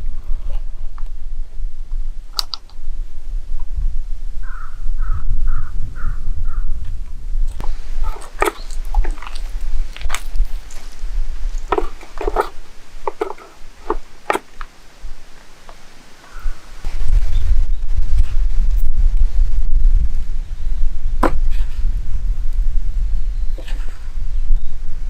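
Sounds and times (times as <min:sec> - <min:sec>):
steady low rumble: 0:00.0 - 0:25.0
sharp clicks and snaps: 0:02.3 - 0:02.8.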